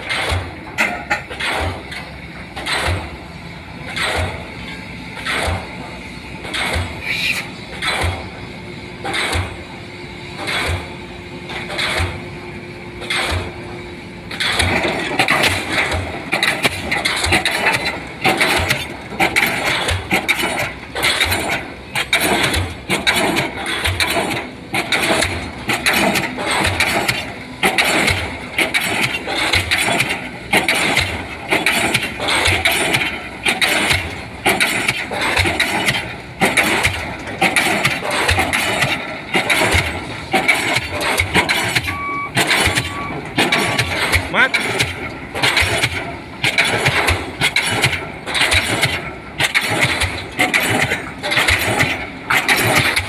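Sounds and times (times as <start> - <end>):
pile hammer striking: 3.9 - 4.5, 6.4 - 8.3, 13.0 - 13.6.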